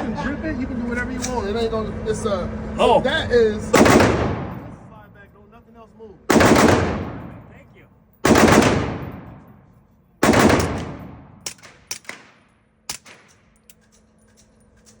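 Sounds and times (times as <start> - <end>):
suppressed machine pistol burst: 3.8 - 4.7, 6.3 - 7.4, 8.2 - 9.6, 10.2 - 13.5
sharp gunshot cracks: 3.8 - 4.8, 6.3 - 7.5, 8.2 - 9.5, 10.2 - 13.4.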